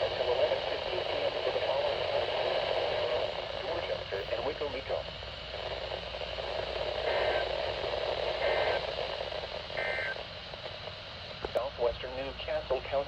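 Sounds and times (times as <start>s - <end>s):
radio static hiss: 0.0s - 13.0s
warbling data tones: 9.7s - 10.2s.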